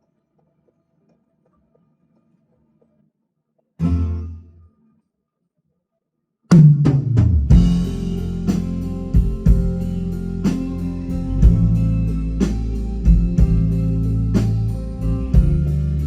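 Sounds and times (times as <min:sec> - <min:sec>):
drum kit kick and snare hits: 0:06.5 - 0:09.9, 0:11.4 - 0:13.8, 0:15.4 - 0:15.7.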